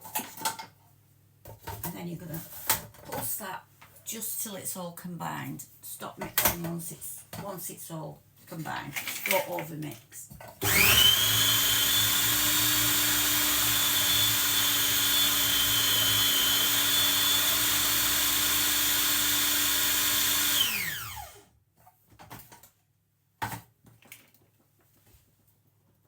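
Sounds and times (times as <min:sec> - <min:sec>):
food processor motor running: 0:10.6 - 0:21.5.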